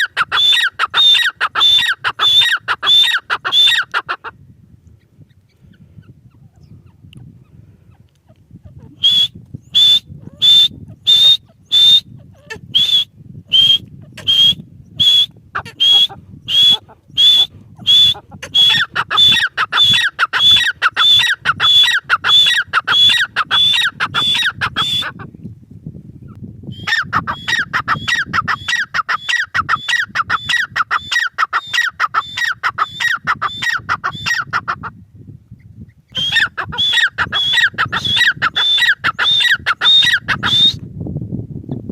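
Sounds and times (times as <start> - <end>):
francolin calling: 0.0 - 4.3, 8.6 - 25.3, 36.1 - 40.8.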